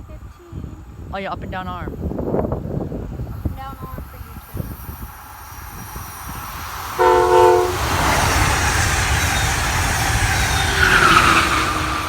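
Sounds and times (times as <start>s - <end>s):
train rushing past: 3.0s - 12.0s
train horn blast: 6.9s - 8.7s.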